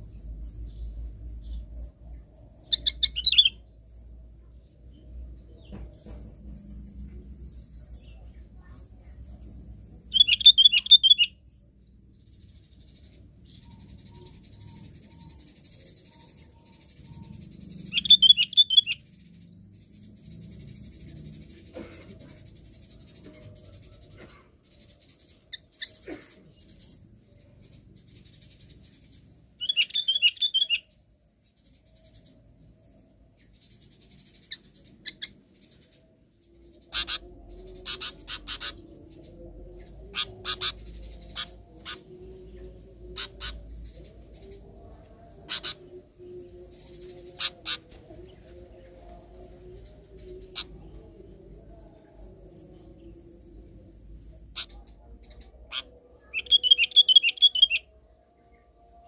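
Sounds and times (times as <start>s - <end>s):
bird singing chirpy notes: 0.0s - 4.2s, 10.0s - 21.6s, 26.6s - 58.9s.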